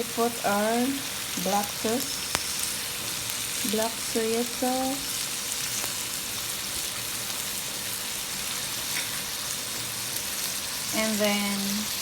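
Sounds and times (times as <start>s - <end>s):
chicken sizzling in a hot pan: 0.0s - 12.0s.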